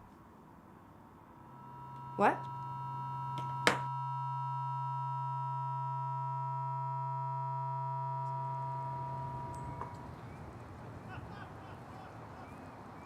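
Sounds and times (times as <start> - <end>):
steady electronic tone: 1.4 - 11.2.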